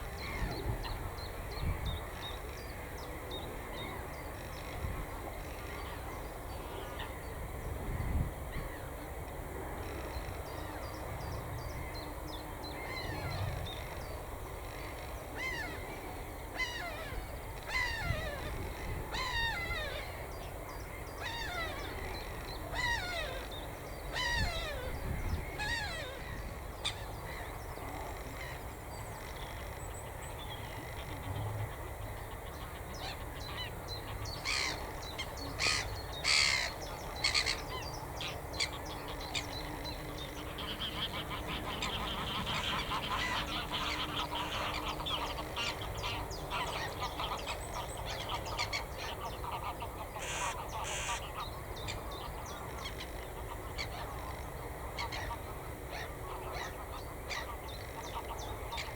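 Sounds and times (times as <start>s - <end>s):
birds calling: 16.6s - 58.9s.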